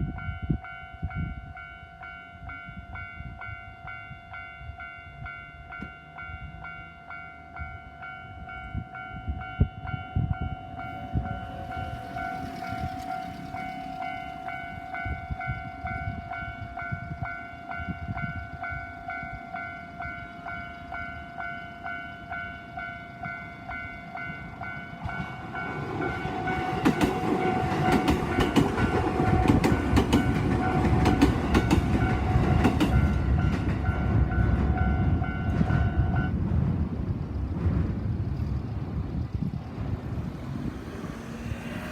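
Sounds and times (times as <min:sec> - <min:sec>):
level-crossing warning bell: 0:00.0 - 0:36.4
train wheels clattering over rails: 0:10.9 - 0:16.0, 0:24.9 - 0:41.9.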